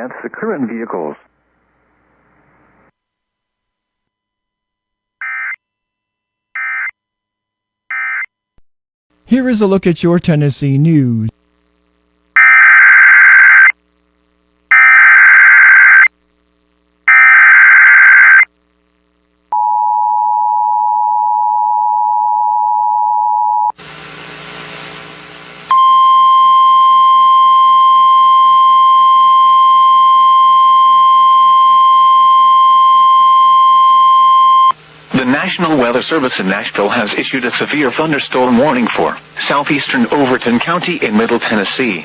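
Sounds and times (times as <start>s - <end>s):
static: 10.3s - 19.5s, 23.8s - 25.7s, 34.8s - 42.0s
data bursts: 17.1s - 18.5s
steady single-pitch warning tone: 17.1s - 18.5s, 19.5s - 23.8s, 25.7s - 34.8s.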